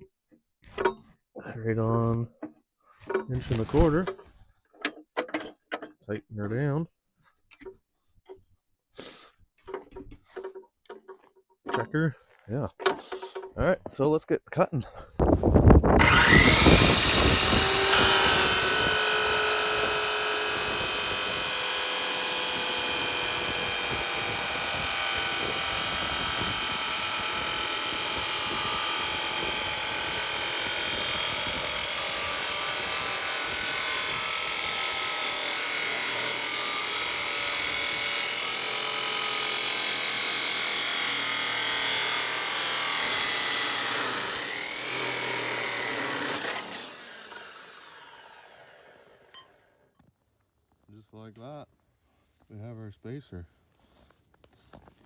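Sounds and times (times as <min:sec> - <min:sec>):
power tool cutting steel pipe: 0:16.0 - 0:49.7.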